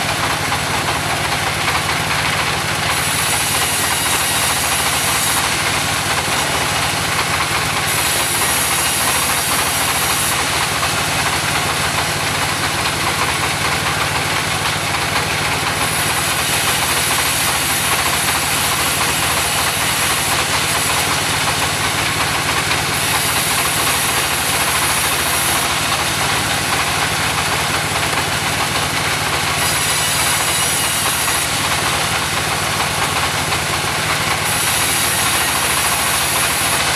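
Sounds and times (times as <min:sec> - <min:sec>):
sawmill engine running: 0:00.0 - 0:36.9.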